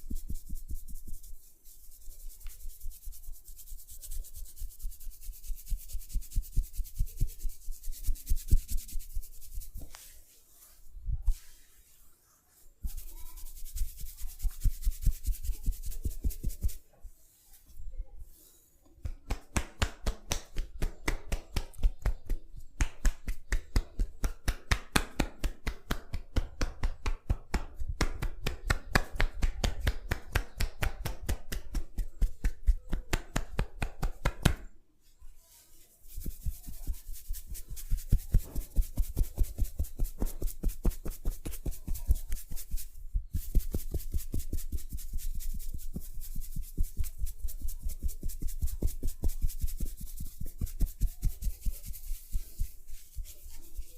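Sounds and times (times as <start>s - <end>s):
rhythmic percussive massage tapping: 19.0s - 34.6s, 36.1s - 53.3s.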